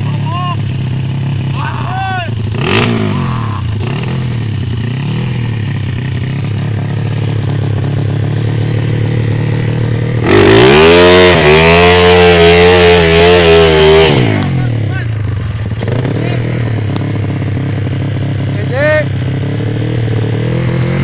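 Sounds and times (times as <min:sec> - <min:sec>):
motorcycle engine running: 0:00.0 - 0:21.0
loud engine rising in pitch: 0:08.4 - 0:15.0, 0:18.7 - 0:21.0.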